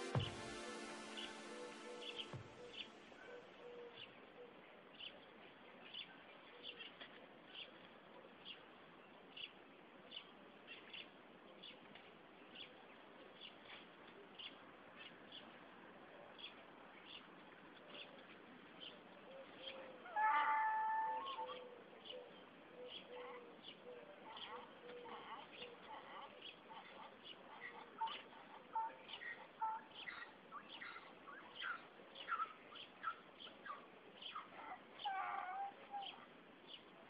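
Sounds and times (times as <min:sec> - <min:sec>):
loud pitched sound: 0:00.0 - 0:03.2
bird chirping faintly: 0:00.0 - 0:15.6
low steady hiss: 0:00.0 - 0:37.0.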